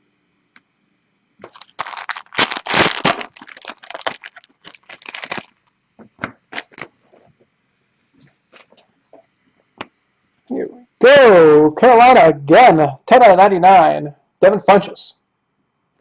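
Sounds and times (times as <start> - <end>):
plastic wrapping tearing and crinkling: 1.4 - 5.7, 6.5 - 7.0.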